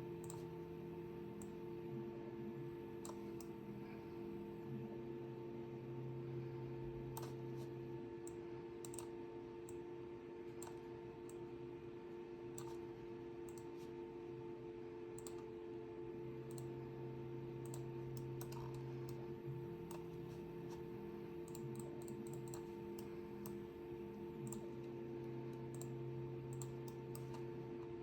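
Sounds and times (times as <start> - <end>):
steady low hum: 0.0 - 28.0
computer mouse clicking: 0.2 - 0.5, 3.0 - 3.6, 7.1 - 9.8, 10.5 - 11.4, 12.5 - 12.8, 13.4 - 13.9, 15.2 - 15.5, 16.5 - 16.7, 17.6 - 19.2, 19.9 - 20.8, 21.4 - 23.6, 24.4 - 24.7, 25.5 - 25.9, 26.5 - 27.5.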